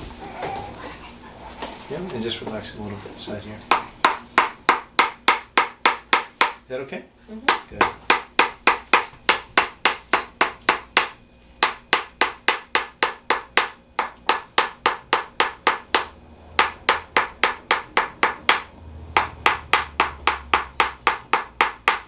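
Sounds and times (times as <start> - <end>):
wooden mallet tapping wooden wedge: 3.7 - 6.6, 7.5 - 22.0.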